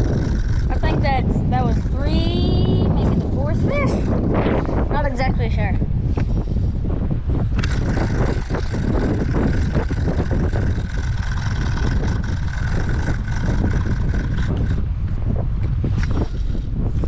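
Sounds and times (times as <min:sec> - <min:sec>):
motor running: 0:00.0 - 0:04.8, 0:07.5 - 0:14.9.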